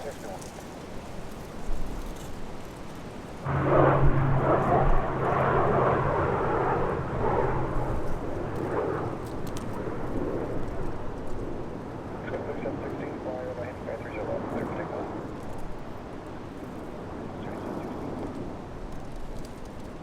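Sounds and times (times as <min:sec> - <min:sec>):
steady low hum: 0:03.4 - 0:18.7
turboprop engines roaring: 0:03.4 - 0:19.8.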